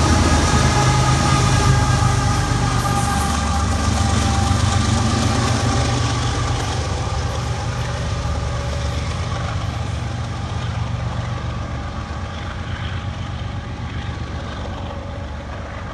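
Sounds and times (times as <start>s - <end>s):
freight train rumbling past: 0.0s - 15.9s.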